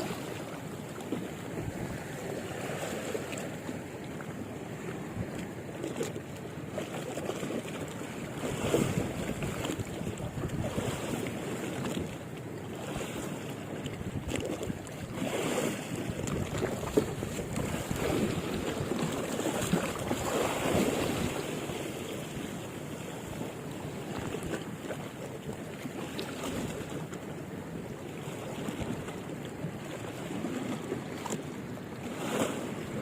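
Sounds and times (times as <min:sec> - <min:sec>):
sea water washing: 0:00.0 - 0:33.0
wind buffeting microphone: 0:01.4 - 0:02.2, 0:08.5 - 0:11.2, 0:14.0 - 0:22.5.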